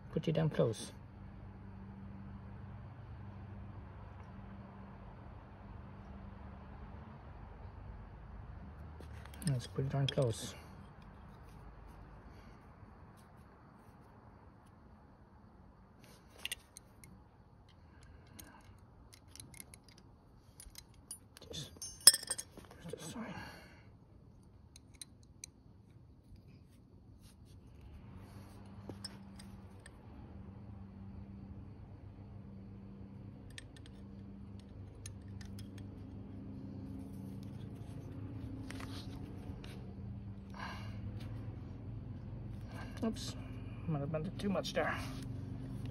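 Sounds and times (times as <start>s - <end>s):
tools and metal part clicking: 9.0s - 11.1s, 16.2s - 22.8s, 24.7s - 25.6s, 28.9s - 29.9s, 33.4s - 36.2s.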